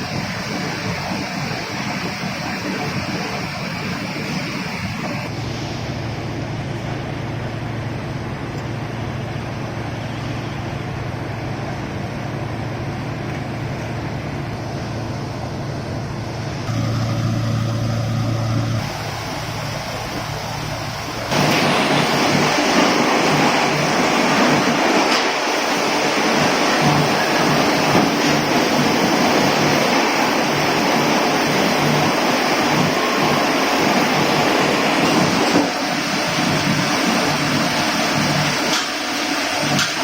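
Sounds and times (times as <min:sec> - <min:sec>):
machinery rushing noise: 0:00.0 - 0:10.0, 0:10.6 - 0:40.0
machinery low hum: 0:00.0 - 0:39.9.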